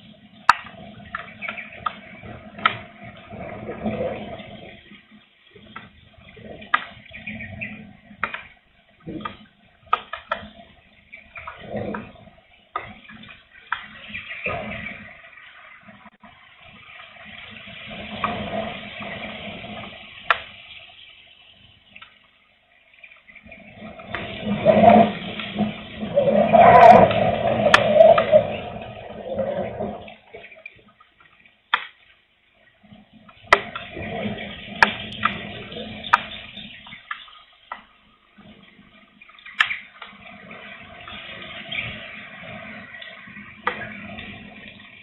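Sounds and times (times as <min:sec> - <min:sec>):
wind gust with low rumble: 0:00.0 - 0:31.1, 0:32.5 - 0:45.0
light rain falling: 0:00.0 - 0:45.0
strong wind: 0:24.0 - 0:30.3.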